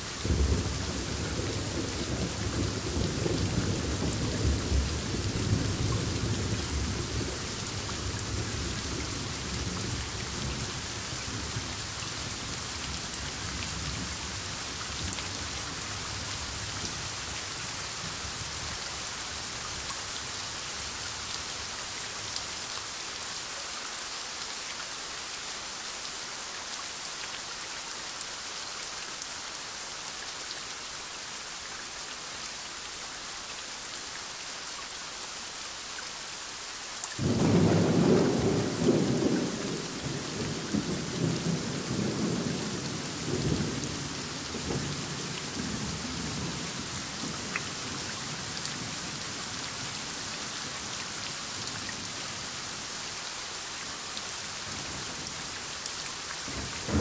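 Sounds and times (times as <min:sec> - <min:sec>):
heavy rain falling: 0:00.0 - 0:57.0
thunder clap rumbling: 0:56.5 - 0:57.0.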